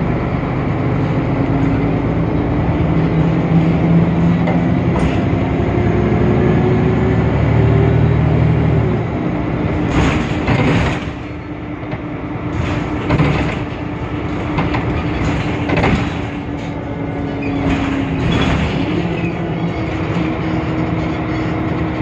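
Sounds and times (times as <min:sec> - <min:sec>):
bus diesel engine running: 0:00.0 - 0:22.0
engine whine: 0:00.0 - 0:22.0
bus body knocks and rattles: 0:02.0 - 0:06.1, 0:09.4 - 0:22.0.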